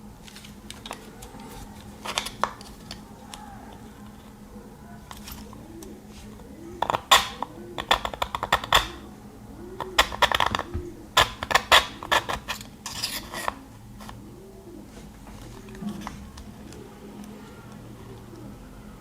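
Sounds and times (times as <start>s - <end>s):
knife rasping through sharpener: 12.3s - 13.6s.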